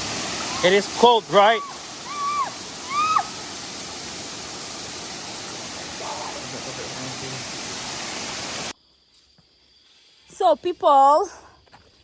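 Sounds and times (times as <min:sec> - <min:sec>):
waterfall rushing: 0:00.0 - 0:08.7.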